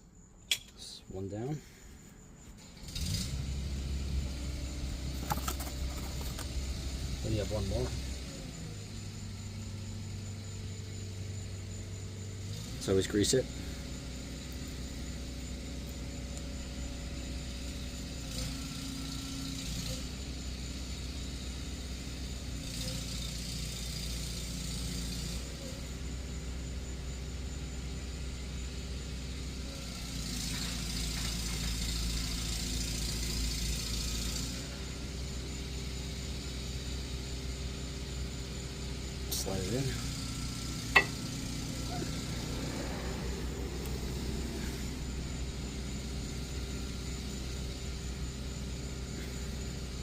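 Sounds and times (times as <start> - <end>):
low mechanical rumble: 2.2 - 18.4, 37.7 - 50.0.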